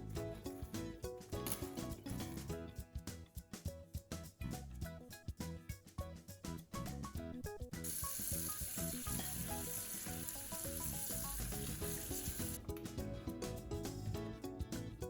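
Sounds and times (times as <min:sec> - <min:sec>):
meat sizzling in a hot pan: 0:07.9 - 0:12.6.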